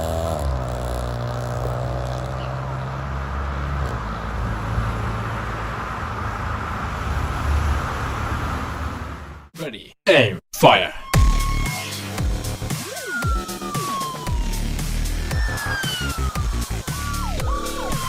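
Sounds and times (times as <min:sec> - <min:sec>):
heavy vehicle engine droning: 0:00.0 - 0:09.5, 0:14.2 - 0:18.0
road and traffic noise: 0:00.0 - 0:09.6, 0:14.0 - 0:18.0.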